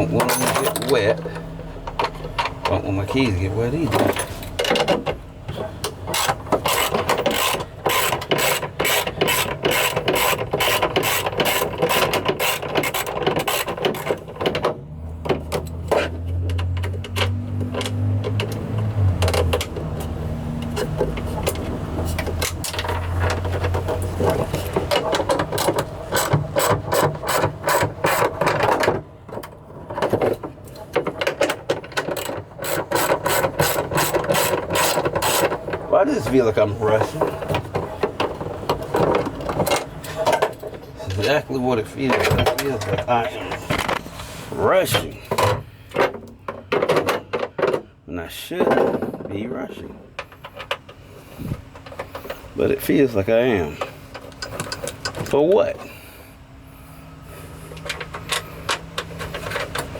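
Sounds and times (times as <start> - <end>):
ratchet wrench clicking: 6.2 - 13.7.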